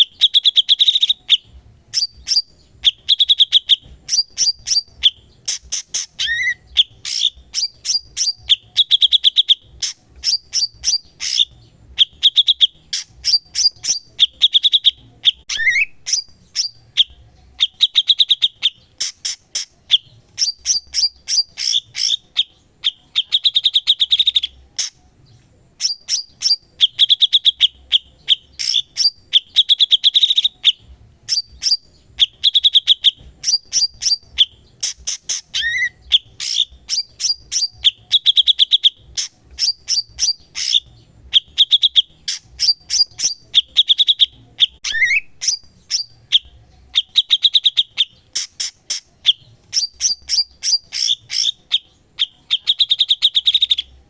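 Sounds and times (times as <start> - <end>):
songbird trilling and chirping: 0.0 - 54.0.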